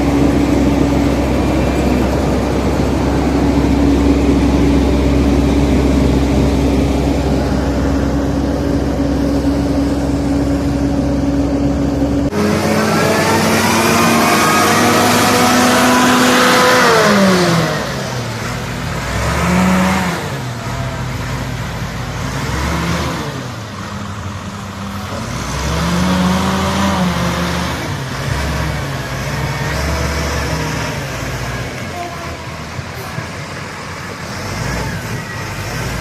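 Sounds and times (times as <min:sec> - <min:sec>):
diesel engine revving: 0:00.0 - 0:36.0.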